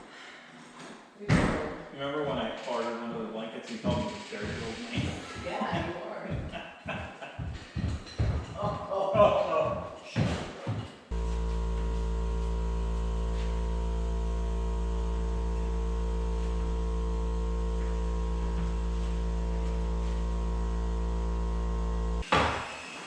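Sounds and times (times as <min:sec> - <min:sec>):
electrical hum: 0:11.1 - 0:22.2.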